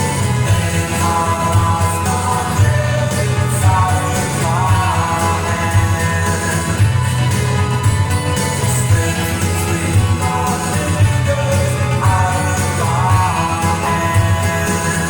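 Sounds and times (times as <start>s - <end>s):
person singing: 0.0s - 15.0s
rock band playing: 0.0s - 15.0s.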